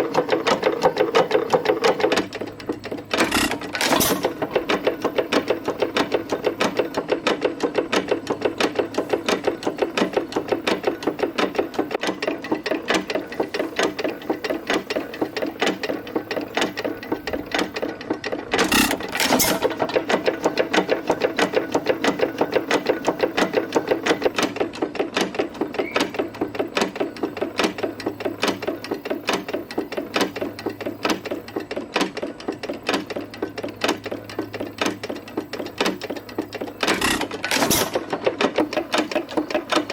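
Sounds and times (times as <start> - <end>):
engine mechanical clatter: 0.0 - 39.9
engine firing bangs: 3.1 - 4.6.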